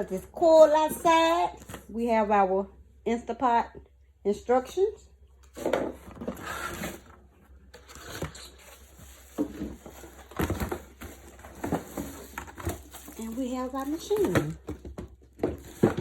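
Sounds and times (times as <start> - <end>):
packaging rustling and scraping: 0.0 - 2.0, 5.4 - 16.0.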